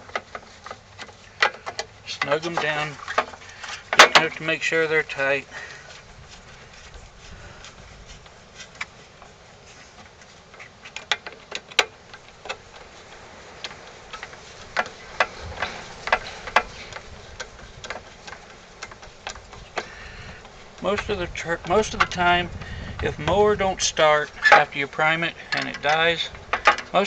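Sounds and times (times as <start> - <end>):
hand tool clicking on screws: 24.3 - 27.0.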